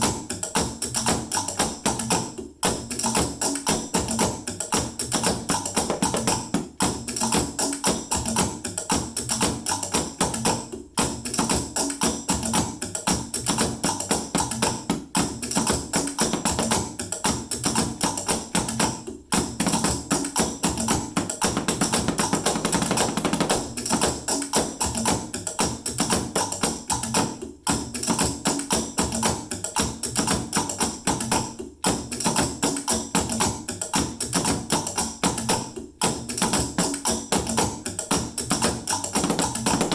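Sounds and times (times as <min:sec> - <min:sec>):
jingling percussion: 0:00.0 - 0:39.9
sticks tapping plastic containers: 0:20.6 - 0:24.7, 0:39.0 - 0:39.9.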